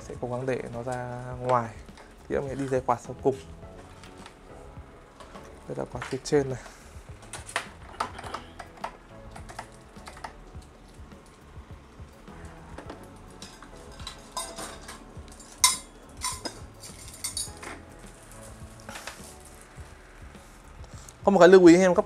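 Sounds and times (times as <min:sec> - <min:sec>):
fan being fitted clicks and knocks: 0:07.3 - 0:10.4.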